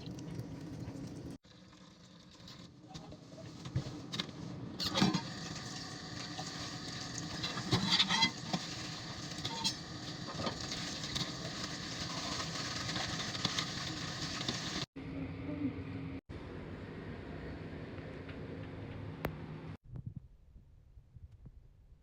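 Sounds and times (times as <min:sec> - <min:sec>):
food sizzling on stove: 0:05.2 - 0:14.9.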